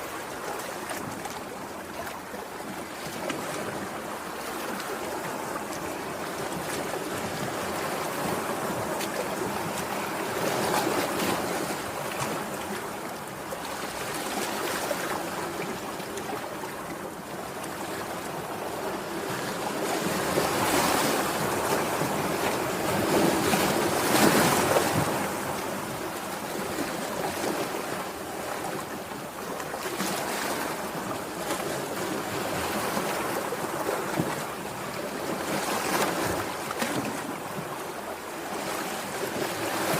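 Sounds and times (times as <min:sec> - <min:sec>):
sea surf breaking on shore: 0:00.0 - 0:39.9.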